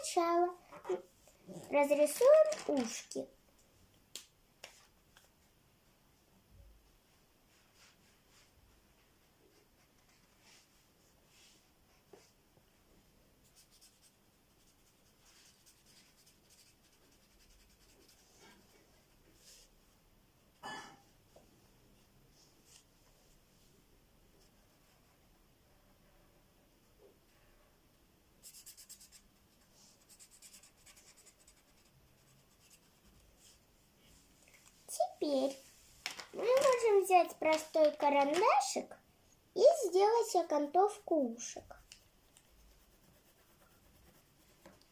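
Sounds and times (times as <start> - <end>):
colouring strokes scratching on paper: 9.5 - 12.3, 13.4 - 19.7, 28.4 - 33.6, 41.7 - 44.9.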